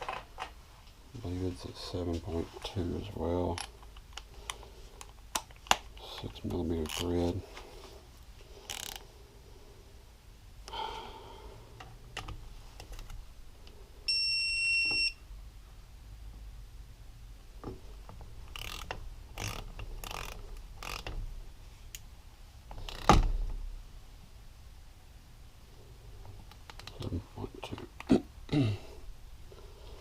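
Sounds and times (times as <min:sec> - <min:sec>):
electronic beep: 0:14.1 - 0:15.2.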